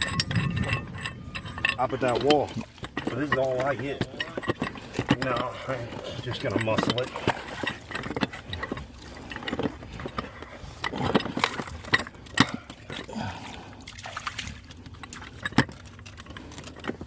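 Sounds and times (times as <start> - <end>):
knocks and scrapes of pipe fitting: 0.0 - 13.1
water trickling and sloshing: 0.0 - 17.0.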